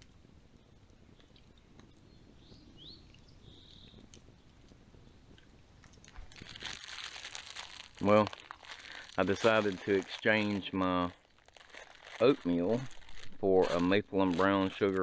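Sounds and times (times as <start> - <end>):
foil wrapper crinkling: 5.8 - 15.0.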